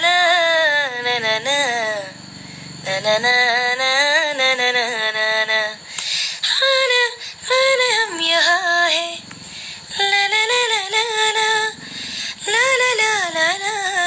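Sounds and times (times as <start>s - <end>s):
woman singing ornamented melody: 0.0s - 2.2s, 2.9s - 5.8s, 6.4s - 9.3s, 9.9s - 11.8s, 12.4s - 14.0s
singer breathing: 2.2s - 2.8s, 5.8s - 6.5s, 7.2s - 7.5s, 9.3s - 10.0s, 11.8s - 12.5s.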